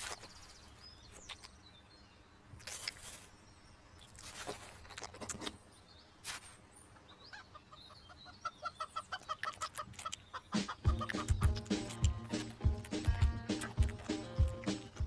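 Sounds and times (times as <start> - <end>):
short pitched calls: 9.2 - 15.0.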